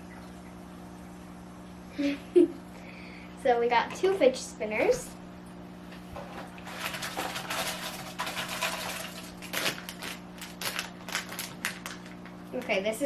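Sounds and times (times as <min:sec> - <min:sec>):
steady low hum: 0:00.0 - 0:13.0
plastic packaging crinkling: 0:06.6 - 0:12.8.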